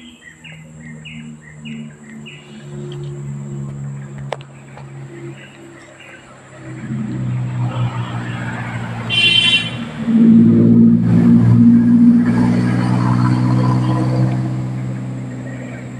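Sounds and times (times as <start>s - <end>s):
vehicle engine humming: 0.0s - 15.9s
high-pitched toot: 6.7s - 14.4s.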